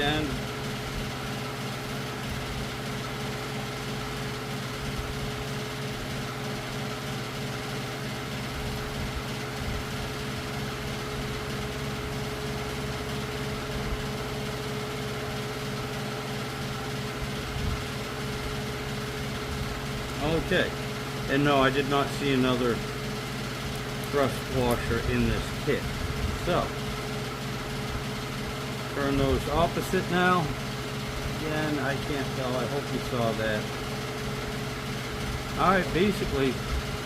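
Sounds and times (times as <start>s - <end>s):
motor humming: 0.0s - 37.0s.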